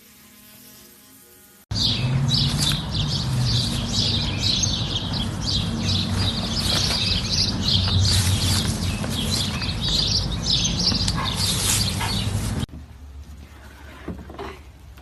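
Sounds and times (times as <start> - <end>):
birds chirping: 1.7 - 12.7.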